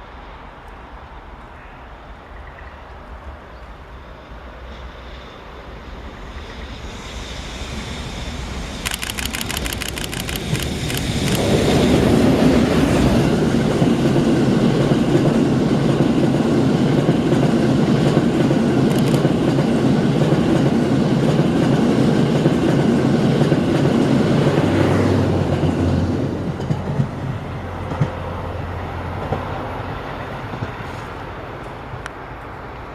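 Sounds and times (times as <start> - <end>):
train passing: 0.0 - 32.9.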